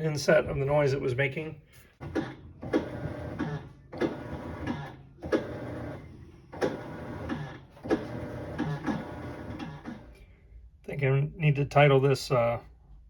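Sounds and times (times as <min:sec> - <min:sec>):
washing machine grinding: 0:02.0 - 0:10.2.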